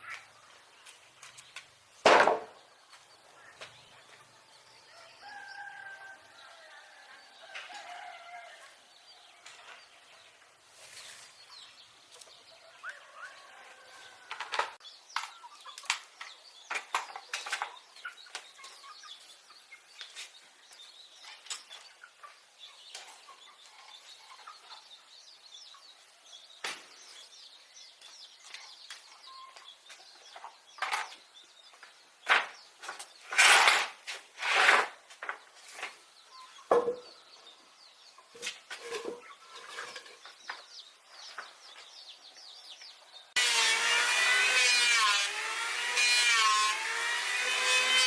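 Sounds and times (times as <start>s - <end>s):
chickens clucking: 0.0s - 27.3s, 35.2s - 43.3s.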